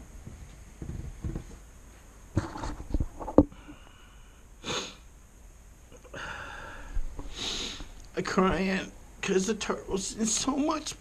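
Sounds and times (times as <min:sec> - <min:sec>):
person sniffling: 0:04.6 - 0:05.1, 0:06.1 - 0:07.9.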